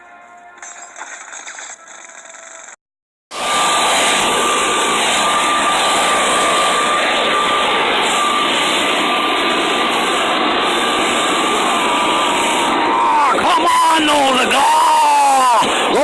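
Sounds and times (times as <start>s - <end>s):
leaf blower running: 3.4s - 13.4s.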